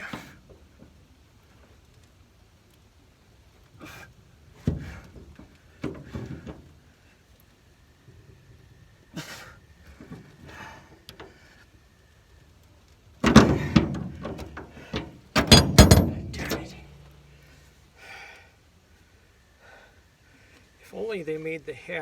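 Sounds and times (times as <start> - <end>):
steel tools knocking on metal: 13.2 - 16.9.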